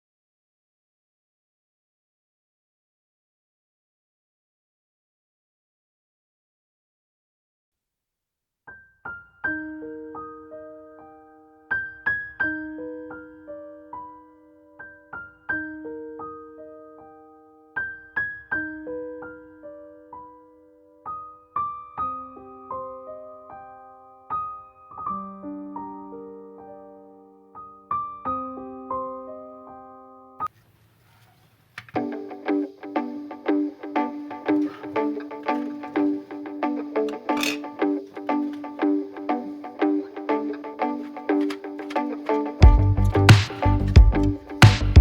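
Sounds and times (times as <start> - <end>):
gentle piano arpeggios: 9.1 - 30.5.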